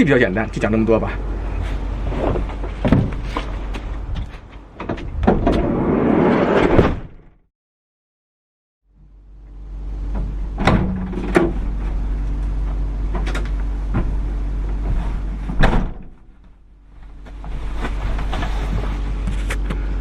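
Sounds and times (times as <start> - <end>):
vehicle running low hum: 0.2 - 4.9, 8.9 - 15.5.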